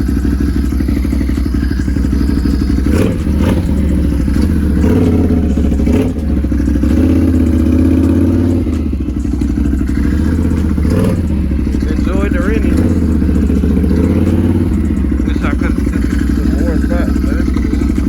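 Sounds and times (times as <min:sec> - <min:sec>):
atv engine rumbling: 0:00.0 - 0:18.0.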